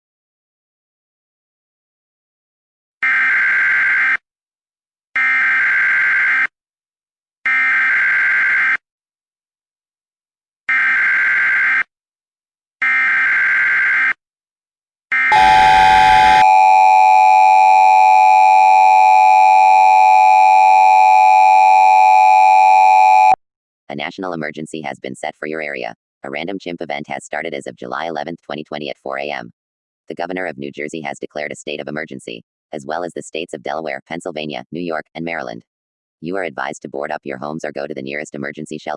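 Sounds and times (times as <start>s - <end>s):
two-tone attention signal: 15.2s - 23.4s.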